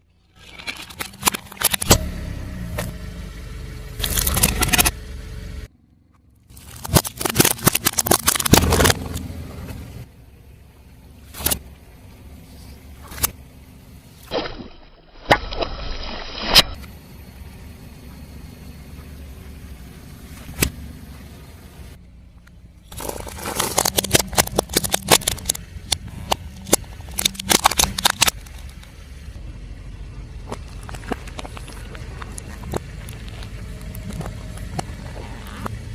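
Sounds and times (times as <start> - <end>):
car rumbling: 0.0 - 35.9
sharp cracks: 6.5 - 9.8, 22.9 - 29.0
tyre crushing objects: 6.5 - 9.8, 22.9 - 28.8
crunching snaps: 6.5 - 10.0, 22.4 - 29.0, 30.4 - 35.8.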